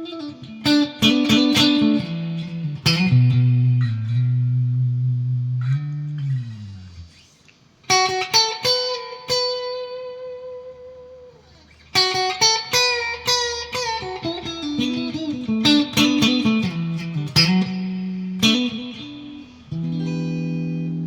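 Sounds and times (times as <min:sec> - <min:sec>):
clean electric guitar notes: 0:00.0 - 0:07.1.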